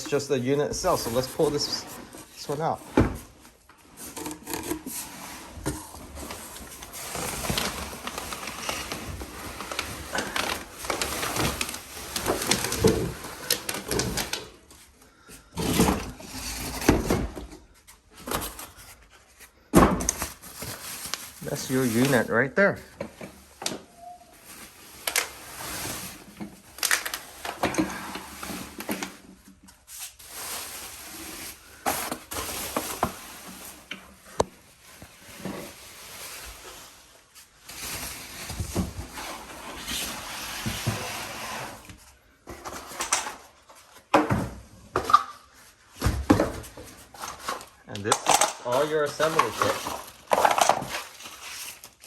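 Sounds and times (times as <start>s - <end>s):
packaging rustling: 6.0s - 14.7s, 20.1s - 22.4s, 23.9s - 29.3s, 46.8s - 52.0s
loose parts clattering: 48.0s - 51.0s.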